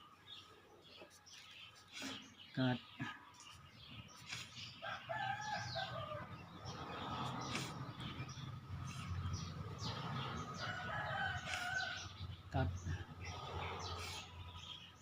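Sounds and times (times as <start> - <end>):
small birds chirping: 0.0 - 15.0
rooster crowing: 4.8 - 6.4, 10.3 - 12.1.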